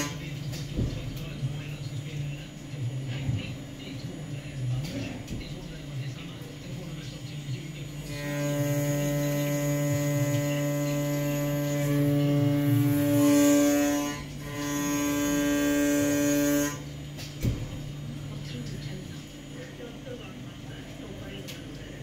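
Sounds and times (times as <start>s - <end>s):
milling machine motors humming: 0.0s - 22.0s.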